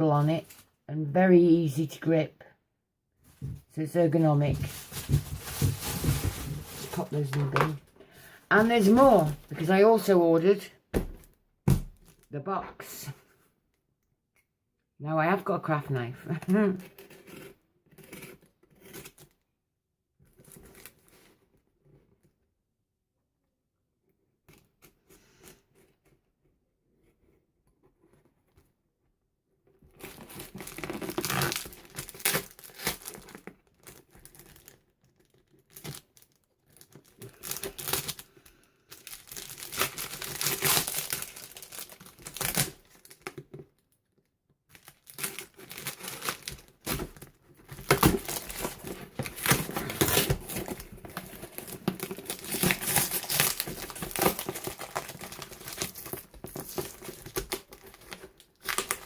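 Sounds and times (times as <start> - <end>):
craft knife cutting packaging: 4.2 - 7.8, 8.5 - 9.7, 16.7 - 19.4, 39.0 - 43.5, 44.7 - 59.0
packaging tearing and crumpling: 4.2 - 7.8, 8.5 - 9.7, 30.0 - 43.4, 44.7 - 59.0.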